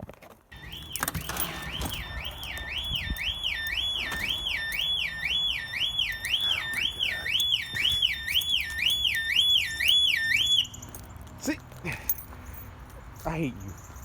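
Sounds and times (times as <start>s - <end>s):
car alarm siren sweeping: 0.5s - 10.9s.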